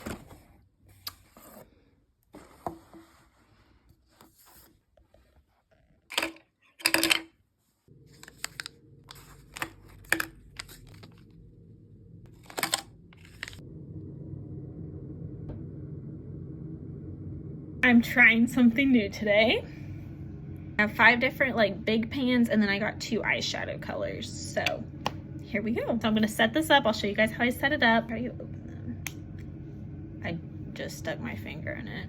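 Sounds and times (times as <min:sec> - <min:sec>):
low steady hum: 0:06.1 - 0:32.0
packaging crinkling and tearing: 0:08.1 - 0:11.4, 0:12.3 - 0:13.6.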